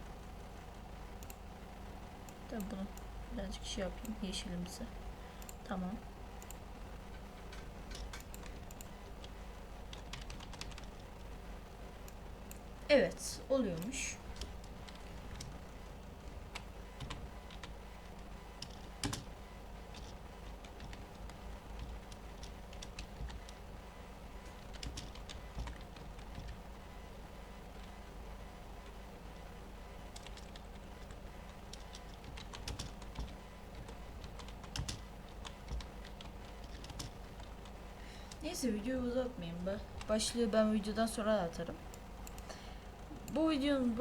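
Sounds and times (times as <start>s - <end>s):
low steady hum: 0.0s - 44.0s
keyboard keys clicking: 0.7s - 1.4s, 6.4s - 11.2s, 13.7s - 23.7s, 24.4s - 26.6s, 30.1s - 38.4s.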